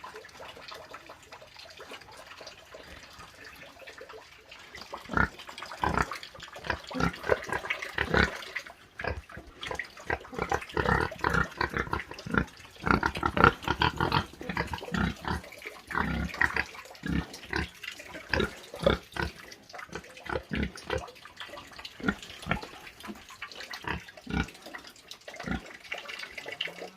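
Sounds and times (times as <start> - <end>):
pigs grunting: 5.1 - 21.1.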